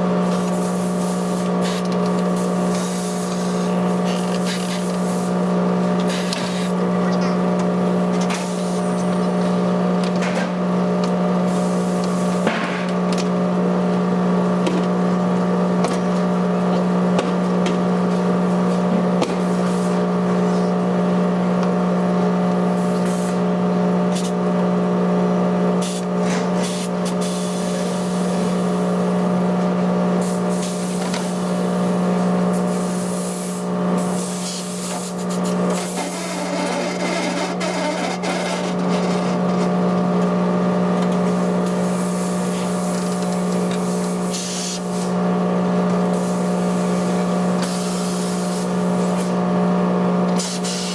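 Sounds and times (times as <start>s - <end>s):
machinery clicks and scraping: 35.7s - 39.9s.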